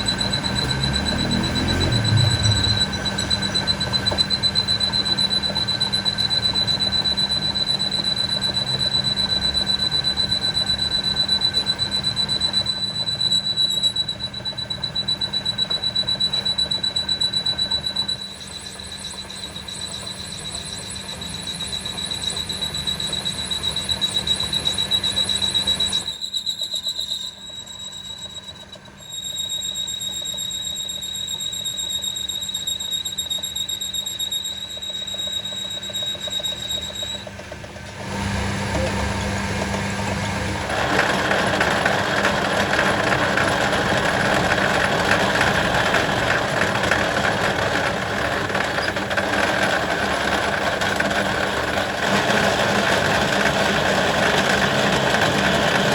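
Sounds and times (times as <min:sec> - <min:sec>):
high-pitched whine: 0:00.0 - 0:14.1
rattling mechanical noise: 0:00.0 - 0:27.5, 0:32.8 - 0:55.9.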